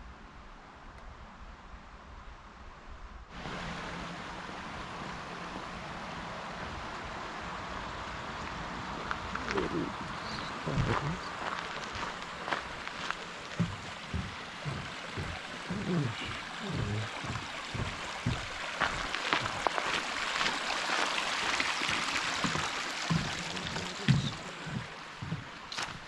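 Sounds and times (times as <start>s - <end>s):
stream water rushing: 3.3s - 26.0s
footsteps on trail: 7.9s - 26.0s.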